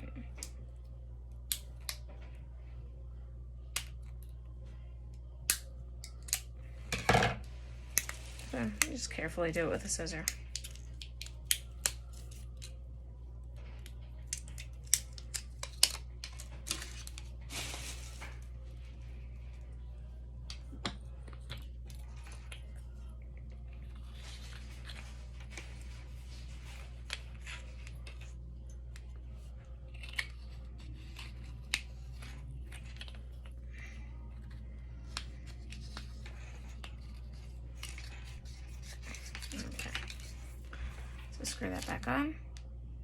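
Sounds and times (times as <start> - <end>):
steady low hum: 0.0 - 43.0
scissors snipping plastic film: 14.2 - 17.7
plastic film rustling: 14.4 - 19.3.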